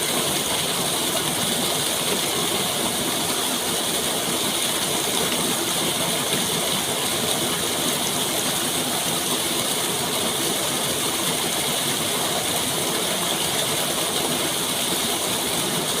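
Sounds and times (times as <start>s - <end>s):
rushing water: 0.0s - 16.0s.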